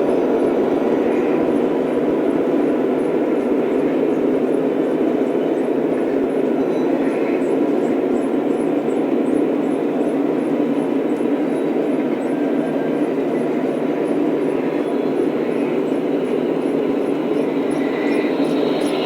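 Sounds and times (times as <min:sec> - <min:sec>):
model train rumbling on track: 0:00.0 - 0:19.0.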